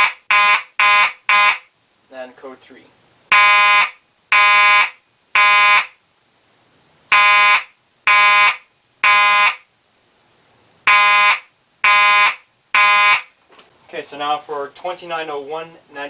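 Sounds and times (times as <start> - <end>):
fire alarm horn blasts: 0.0 - 1.7, 3.3 - 6.0, 7.1 - 9.6, 10.9 - 13.3.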